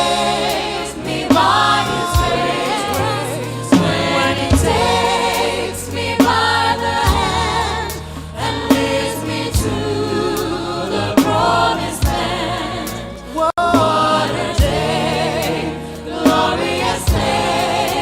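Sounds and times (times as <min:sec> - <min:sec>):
gospel group singing in harmony: 0:00.0 - 0:18.0
instrumental accompaniment: 0:00.0 - 0:18.0
steady bass: 0:00.0 - 0:18.0
drum hits: 0:01.3 - 0:05.5, 0:06.2 - 0:08.0.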